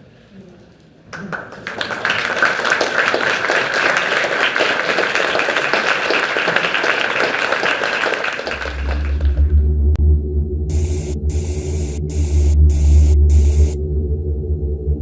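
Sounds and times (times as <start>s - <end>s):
audience applauding: 1.1s - 9.6s
music with low bass: 8.6s - 15.0s.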